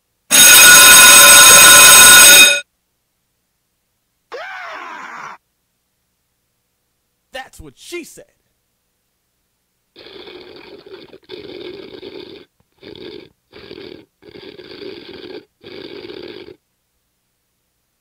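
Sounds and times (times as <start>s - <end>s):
snoring breaths: 10.0s - 16.6s.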